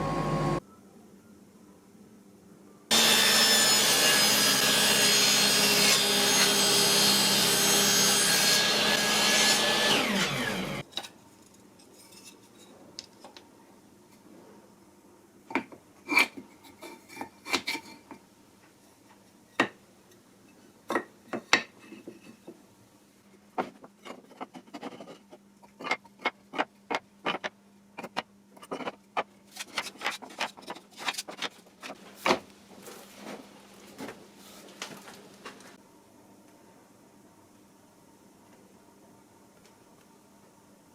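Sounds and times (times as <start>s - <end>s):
faint steady hum: 0.0s - 2.9s, 10.6s - 40.9s
wooden blocks and tools clacking: 23.6s - 32.4s.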